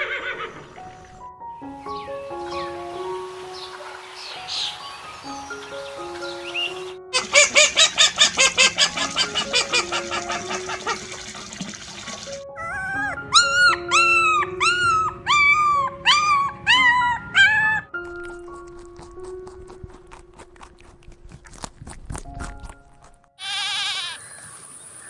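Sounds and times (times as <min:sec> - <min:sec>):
soft background music: 0:00.3 - 0:23.4
animal pulsed calls: 0:06.5 - 0:11.0
animal high-pitched yelping: 0:07.1 - 0:11.0, 0:12.6 - 0:17.9, 0:23.4 - 0:24.2.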